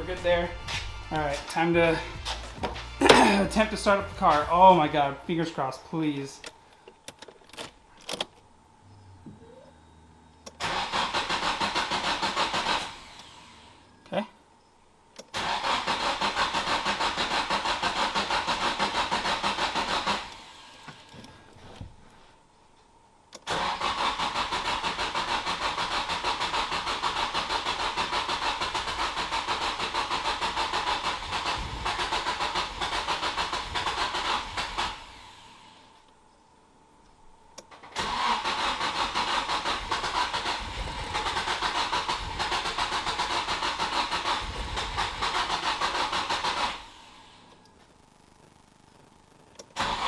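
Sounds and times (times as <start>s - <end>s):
starter motor cranking engine: 10.6s - 13.7s, 15.3s - 21.2s, 23.4s - 35.7s, 37.7s - 47.4s, 49.6s - 50.0s.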